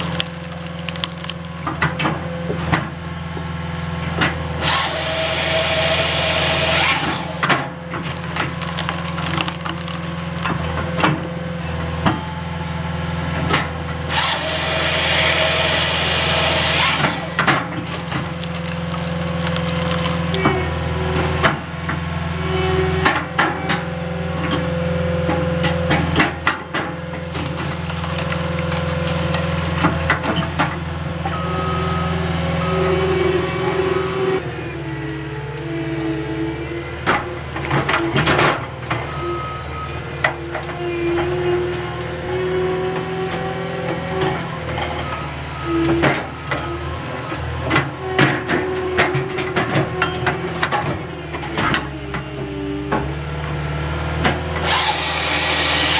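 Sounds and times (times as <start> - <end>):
logs cracking being split: 0.0 - 2.8, 6.2 - 11.4, 14.1 - 20.8, 26.5 - 30.7
engine running under load: 0.0 - 55.9
hydraulic whine: 4.5 - 24.3, 54.6 - 55.9.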